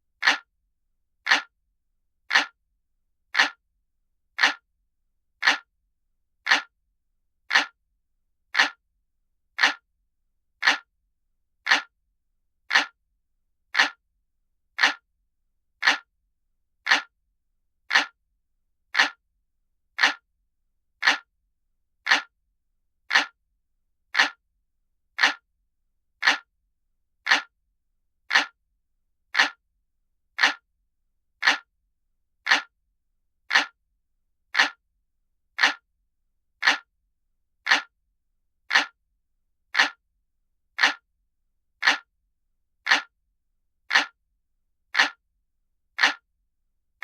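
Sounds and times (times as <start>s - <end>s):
clock ticking: 0.2s - 0.5s, 1.3s - 1.5s, 2.3s - 2.6s, 3.4s - 3.6s, 4.4s - 4.6s, 5.4s - 5.7s, 6.5s - 6.7s, 7.5s - 7.8s, 8.6s - 8.8s, 9.6s - 9.8s, 10.6s - 10.9s, 11.7s - 11.9s, 12.7s - 13.0s, 13.8s - 14.0s, 14.8s - 15.0s, 15.8s - 16.1s, 16.9s - 17.1s, 17.9s - 18.2s, 19.0s - 19.2s, 20.0s - 20.2s, 21.0s - 21.3s, 22.1s - 22.3s, 23.1s - 23.4s, 24.2s - 24.4s, 25.2s - 25.4s, 26.2s - 26.5s, 27.3s - 27.5s, 28.3s - 28.6s, 29.4s - 29.6s, 30.4s - 30.6s, 31.4s - 31.7s, 32.5s - 32.7s, 33.5s - 33.8s, 34.5s - 34.8s, 35.6s - 35.8s, 36.6s - 36.9s, 37.6s - 37.9s, 38.7s - 39.0s, 39.7s - 40.0s, 40.8s - 41.0s, 41.8s - 42.1s, 42.8s - 43.1s, 43.9s - 44.2s, 44.9s - 45.2s, 46.0s - 46.2s.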